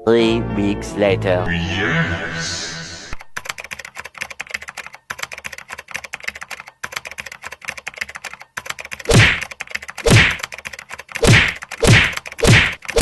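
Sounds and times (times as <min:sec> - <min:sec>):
fast typing on keyboard: 0:03.2 - 0:13.0
loud heavy thud: 0:09.1 - 0:09.4.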